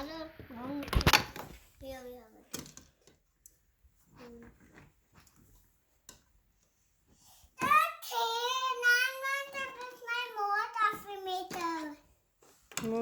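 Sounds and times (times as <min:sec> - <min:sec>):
child's voice: 0:00.0 - 0:00.9, 0:01.8 - 0:02.5, 0:07.6 - 0:12.1.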